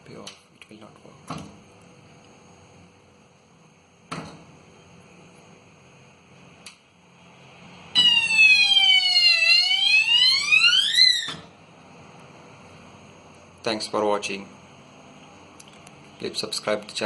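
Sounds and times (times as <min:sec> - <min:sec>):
electronic alarm siren: 0:07.9 - 0:11.5.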